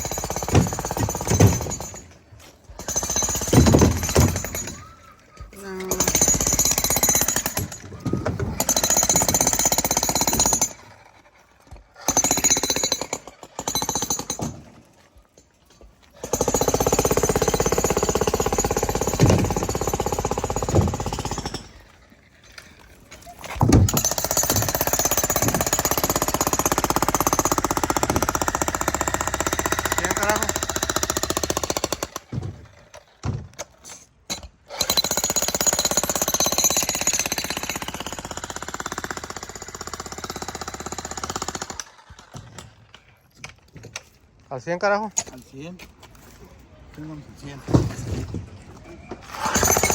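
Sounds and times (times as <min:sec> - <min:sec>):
concrete breaker hammering: 0:00.0 - 0:02.1, 0:02.8 - 0:04.9, 0:16.2 - 0:21.7, 0:23.6 - 0:32.7, 0:49.3 - 0:49.9.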